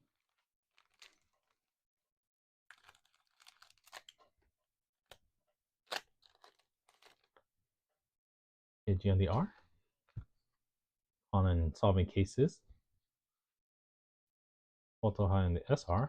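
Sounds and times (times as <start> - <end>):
trading cards rustling and clicking: 0.3 - 1.6, 2.7 - 4.3, 5.9 - 7.4.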